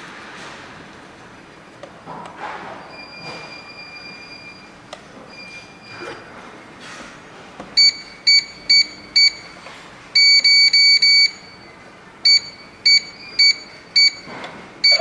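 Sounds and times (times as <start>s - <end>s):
alarm panel short high beeps: 10.2s - 15.0s.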